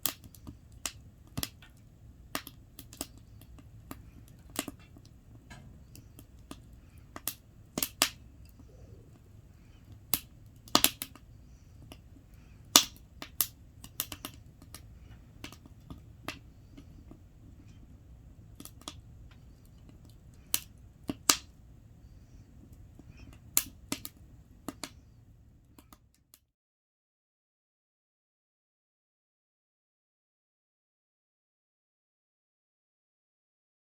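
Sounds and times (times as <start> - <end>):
wood fire crackling and popping: 0.0 - 26.0
low rumble of flame: 0.0 - 26.2.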